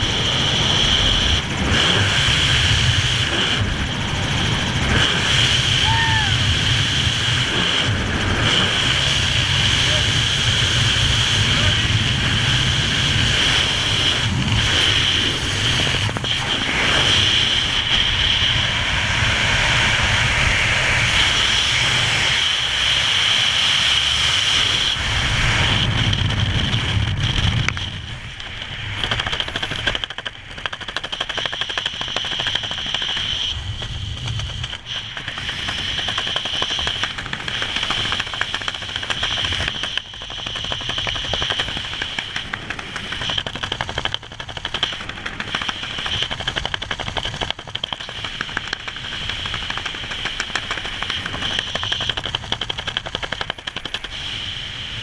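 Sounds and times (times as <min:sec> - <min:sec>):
wind buffeting microphone: 0:24.3 - 0:29.2.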